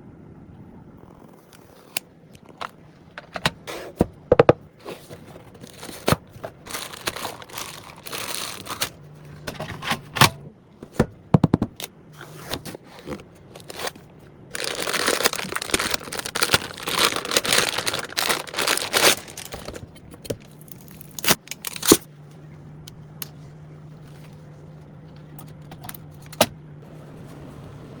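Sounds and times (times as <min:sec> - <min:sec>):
low hum: 0:00.0 - 0:28.0
plastic crinkling and tearing: 0:05.0 - 0:09.6, 0:12.7 - 0:22.1
components clicking and knocking: 0:09.4 - 0:11.9.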